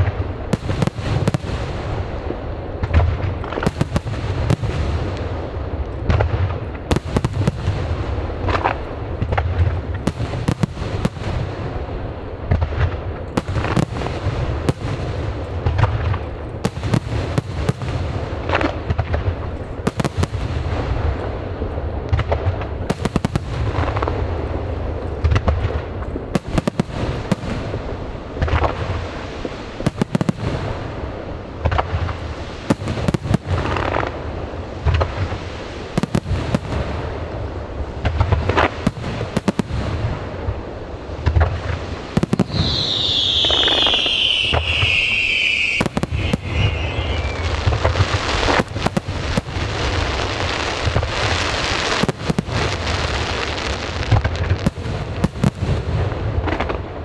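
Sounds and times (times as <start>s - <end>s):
fireworks bursting with booms: 0.0s - 57.0s
fireworks crackling: 0.0s - 57.0s
firework whistle sliding down: 42.4s - 48.6s.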